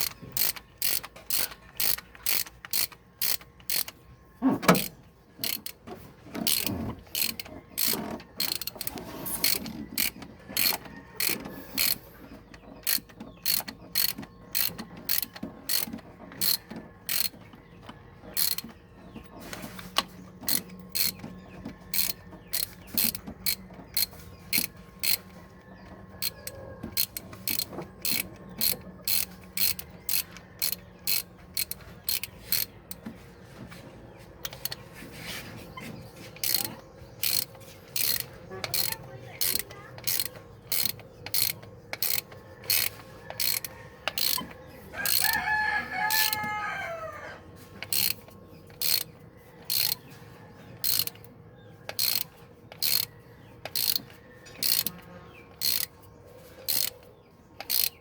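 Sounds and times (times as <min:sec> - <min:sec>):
ratchet wrench clicking: 0:00.0 - 0:04.0, 0:04.7 - 0:05.8, 0:06.4 - 0:12.0, 0:12.8 - 0:17.5, 0:18.3 - 0:18.8, 0:20.4 - 0:21.2, 0:21.9 - 0:25.4, 0:26.2 - 0:33.0, 0:34.4 - 0:34.8, 0:36.4 - 0:45.4, 0:46.1 - 0:46.5, 0:47.8 - 0:50.0, 0:50.8 - 0:51.3, 0:51.9 - 0:55.9, 0:56.7 - 0:58.0.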